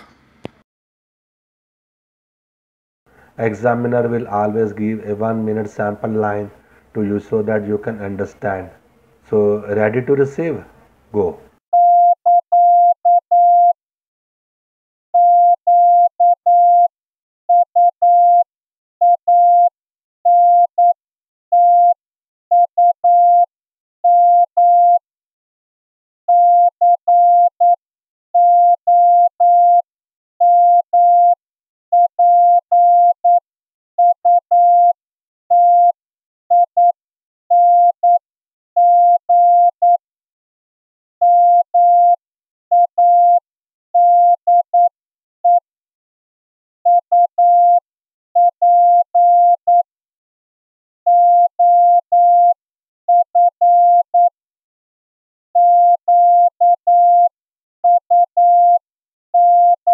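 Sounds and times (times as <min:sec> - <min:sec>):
morse code beeps: 0:11.8 - 0:13.8, 0:34.0 - 0:38.2, 0:38.8 - 0:40.0, 0:41.2 - 0:43.4, 0:44.0 - 0:44.9, 0:46.9 - 0:47.8, 0:48.4 - 0:49.8, 0:51.1 - 0:54.3, 0:55.6 - 0:57.3, 0:57.9 - 0:58.8, 0:59.4 - 0:59.9.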